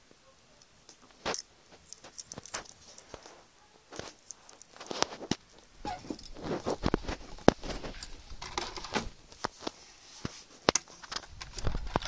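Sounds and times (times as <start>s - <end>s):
rustling: 0.6s - 12.0s
plastic parts clicking and tapping: 0.9s - 3.3s, 4.0s - 9.8s, 10.6s - 12.0s.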